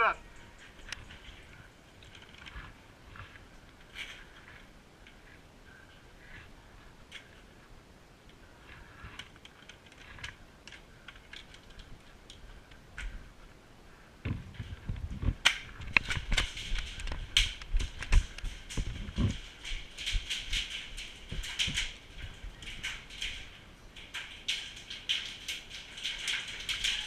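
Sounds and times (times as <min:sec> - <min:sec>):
rustling gear: 0:00.3 - 0:07.6, 0:08.4 - 0:13.6.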